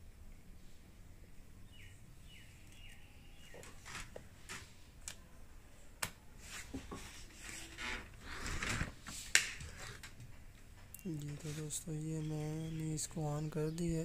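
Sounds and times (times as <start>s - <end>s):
rustling: 6.4s - 12.2s.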